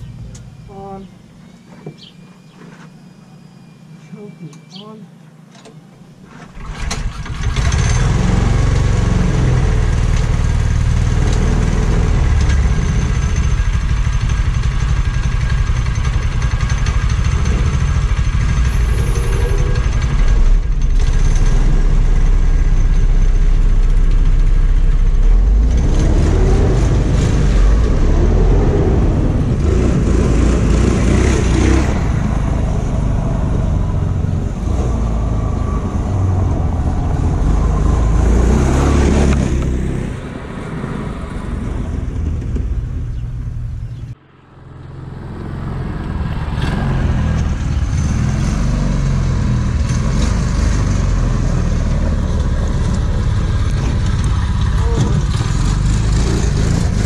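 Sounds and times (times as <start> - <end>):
small gas engine revving: 6.3 - 14.0, 16.4 - 22.5, 25.2 - 42.1, 45.1 - 57.0.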